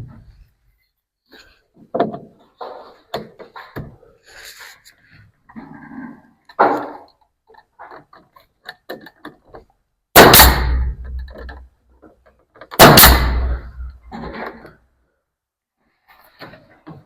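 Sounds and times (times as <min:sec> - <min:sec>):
boards knocking and tapping: 0:01.8 - 0:04.0
nail gun firing into wood: 0:10.2 - 0:11.6, 0:12.7 - 0:14.3.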